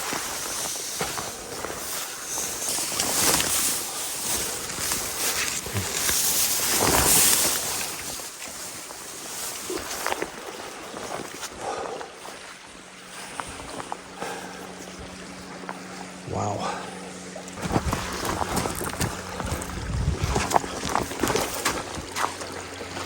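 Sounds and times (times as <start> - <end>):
creek water rushing: 13.0 - 23.0.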